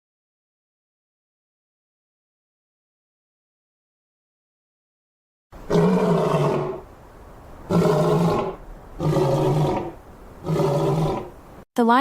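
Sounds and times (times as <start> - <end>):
lion roaring: 5.6 - 6.9, 7.6 - 11.4.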